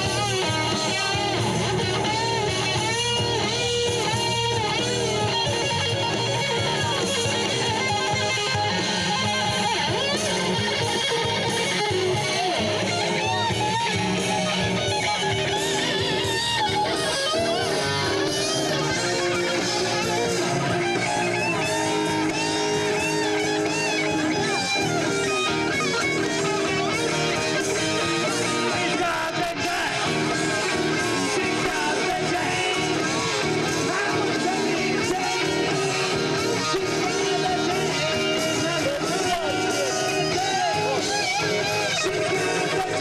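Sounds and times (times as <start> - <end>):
electric guitar: 0.0 - 43.0
rock band playing: 0.0 - 43.0.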